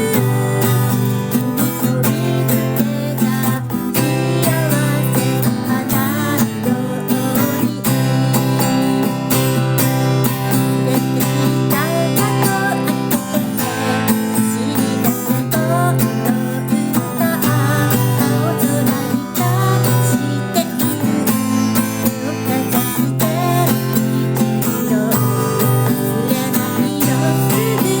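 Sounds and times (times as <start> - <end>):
acoustic guitar strumming: 0.0 - 28.0
person singing: 0.0 - 28.0.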